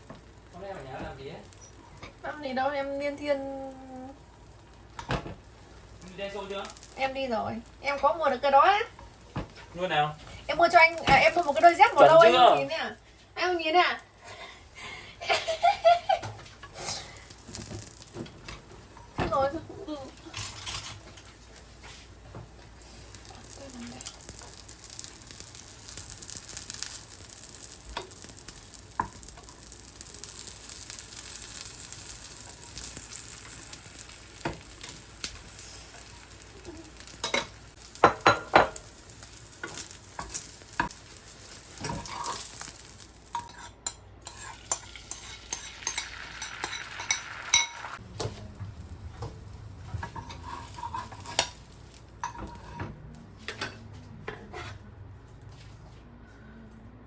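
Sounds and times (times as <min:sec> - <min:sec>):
food sizzling in a pan: 0:00.0 - 0:53.7.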